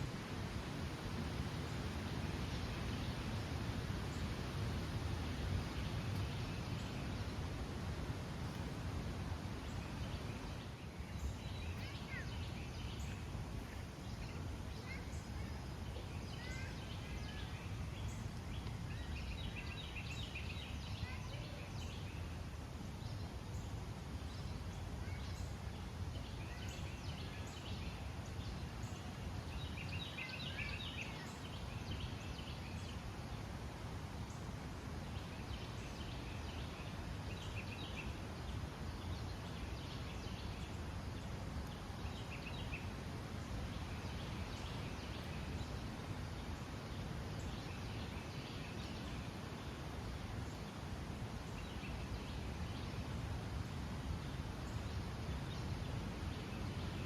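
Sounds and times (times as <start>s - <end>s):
songbirds chirping: 0.0s - 57.0s.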